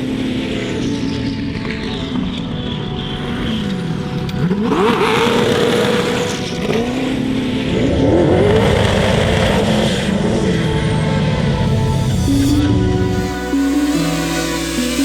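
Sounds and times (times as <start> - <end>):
engine revving hard: 4.4 - 7.1.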